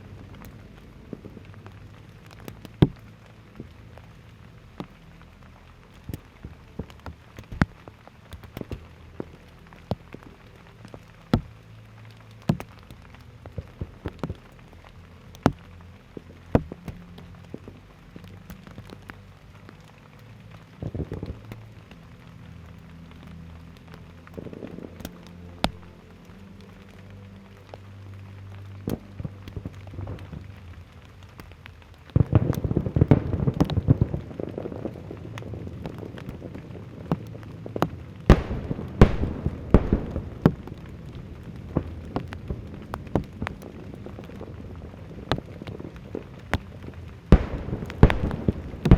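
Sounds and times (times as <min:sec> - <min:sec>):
fireworks crackling: 0:00.0 - 0:26.6, 0:28.1 - 0:48.9
low steady drone: 0:00.0 - 0:48.9
fireworks bangs and pops: 0:32.2 - 0:48.9.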